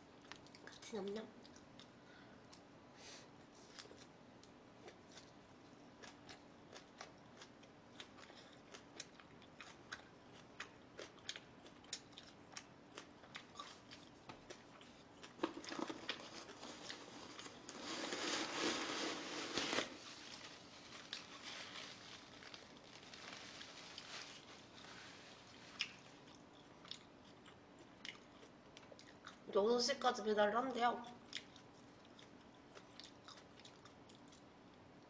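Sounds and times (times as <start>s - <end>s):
chewing clicks and smacks: 6.0s - 15.9s, 25.8s - 29.4s, 31.3s - 34.5s.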